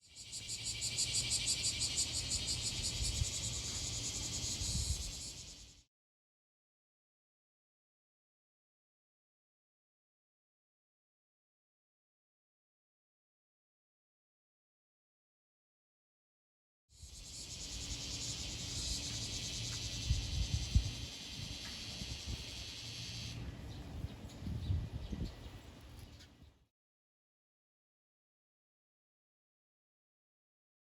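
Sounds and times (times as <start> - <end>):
insects chirping in pulses: 0.0 - 5.9, 17.0 - 23.5.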